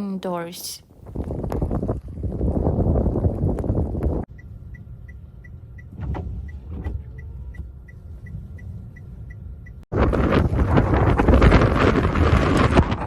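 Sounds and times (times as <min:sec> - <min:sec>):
wind buffeting microphone: 0:00.8 - 0:13.0
car engine rumble: 0:00.9 - 0:13.0
indicator relay ticking: 0:04.3 - 0:09.9.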